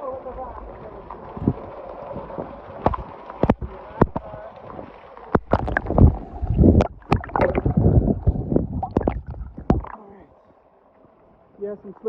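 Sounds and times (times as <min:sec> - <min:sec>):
water splashing and sloshing: 0:00.0 - 0:12.0
sharp knocks and clicks: 0:02.8 - 0:04.2.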